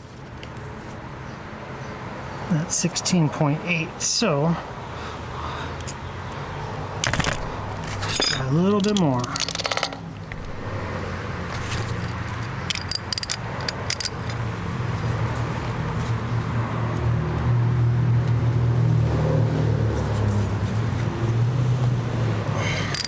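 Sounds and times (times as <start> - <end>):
low steady rumble: 7.4 - 14.7
chain tool metal clinks: 7.9 - 10.8, 11.5 - 14.5, 22.8 - 23.0.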